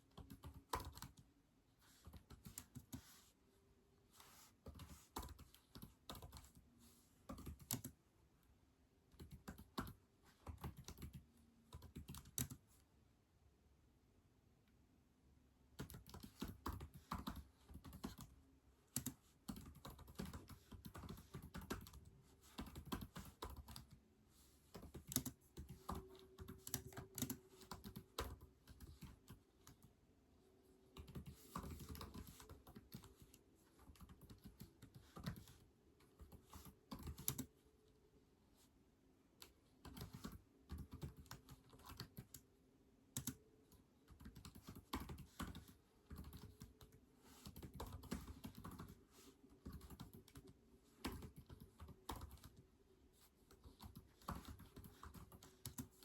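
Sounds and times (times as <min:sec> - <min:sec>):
typing on keyboard: 0:00.0 - 0:01.3, 0:02.0 - 0:03.0, 0:04.7 - 0:06.6, 0:07.3 - 0:08.0, 0:09.1 - 0:12.7, 0:15.7 - 0:24.0, 0:24.7 - 0:29.9, 0:30.9 - 0:37.5, 0:39.4 - 0:42.4, 0:43.1 - 0:49.0, 0:49.6 - 0:52.6, 0:53.5 - 0:56.0.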